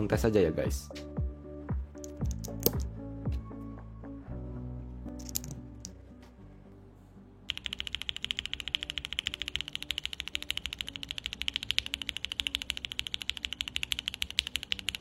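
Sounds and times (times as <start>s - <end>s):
fast mechanical keyboard typing: 7.5s - 15.0s.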